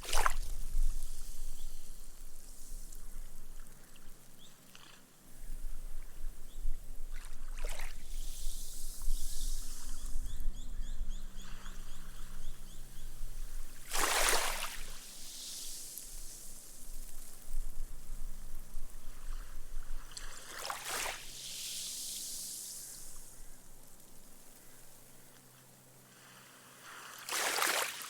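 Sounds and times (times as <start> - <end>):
small waves lapping on sand: 0.0 - 1.4, 7.1 - 8.8, 13.8 - 17.4, 19.1 - 23.4, 26.0 - 28.0
foam fizzing into sand: 13.9 - 17.0, 20.1 - 23.3, 26.4 - 28.0.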